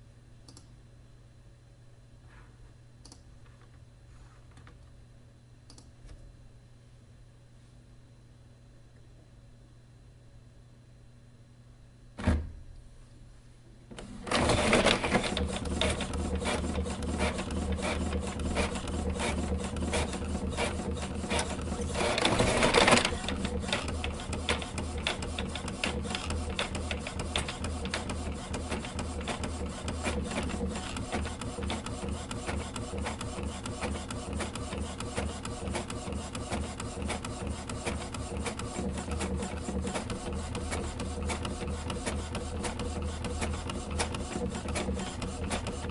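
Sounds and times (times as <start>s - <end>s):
sharp click: 5.7s - 6.2s.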